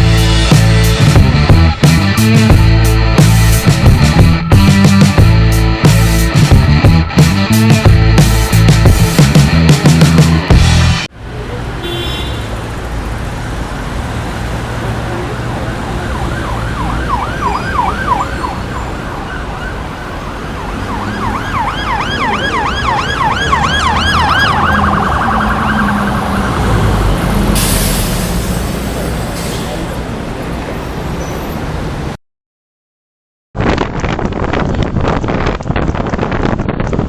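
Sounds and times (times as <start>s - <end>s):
low rumble of traffic: 0.0s - 32.2s
siren yelping: 15.5s - 27.5s.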